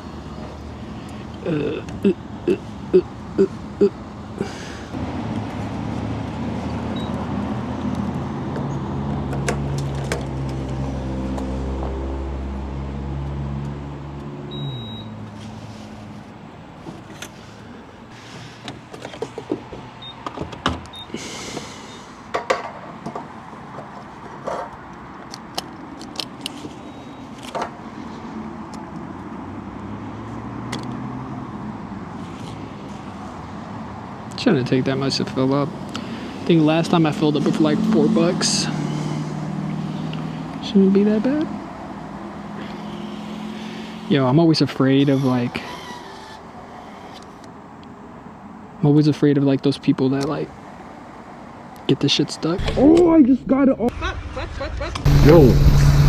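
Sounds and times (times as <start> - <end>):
short beep: 14.5 - 15.2.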